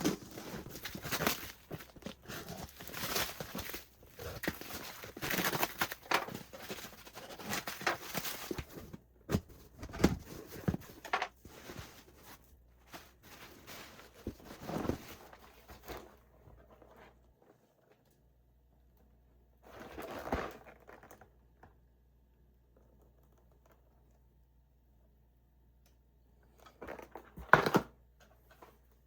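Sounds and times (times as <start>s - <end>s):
packaging rustling and knocking: 0.0s - 16.1s.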